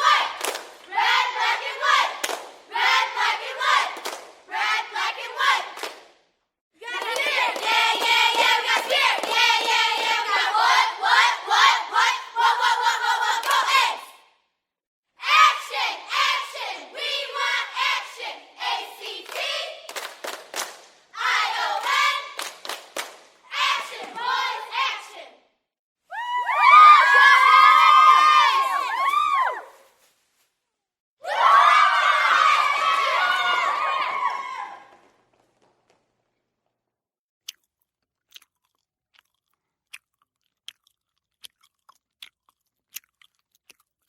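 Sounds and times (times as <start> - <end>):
crowd shouting together: 0.0 - 2.2
hand claps: 0.4 - 0.9, 2.2 - 2.6, 4.0 - 4.4, 5.8 - 6.2, 19.3 - 21.0, 21.8 - 23.3.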